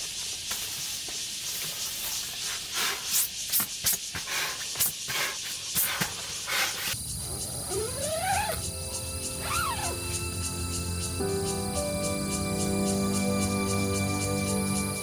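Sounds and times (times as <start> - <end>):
steady hiss: 0.0 - 9.6.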